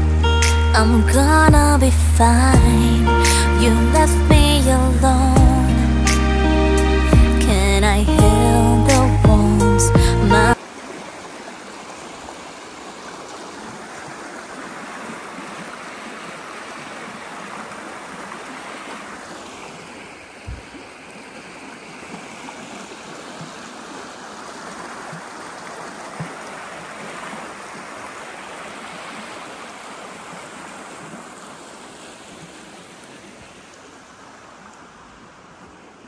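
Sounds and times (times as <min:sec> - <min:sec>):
waterfall rushing: 0:00.0 - 0:36.0
low thumps: 0:01.5 - 0:01.8, 0:02.6 - 0:02.8, 0:04.3 - 0:04.6, 0:05.4 - 0:06.3, 0:07.2 - 0:07.5, 0:08.2 - 0:10.4.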